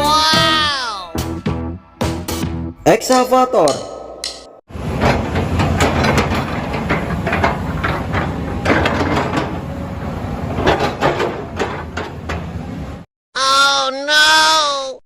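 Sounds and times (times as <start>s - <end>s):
clanks and knocks: 3.1s - 12.8s
excavator engine rumble: 4.7s - 13.1s.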